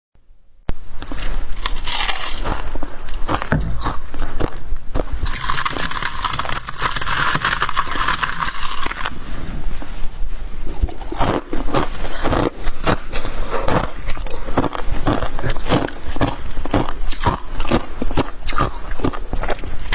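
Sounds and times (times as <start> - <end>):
frost scraping hiss: 0.8 - 19.9
crisp frost crunches: 1.1 - 4.5, 5.2 - 9.8, 10.5 - 16.0.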